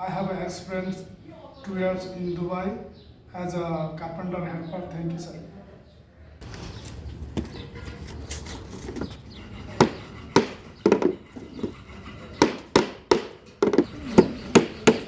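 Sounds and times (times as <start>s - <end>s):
hammer striking wood: 9.8s - 11.7s, 12.4s - 15.0s.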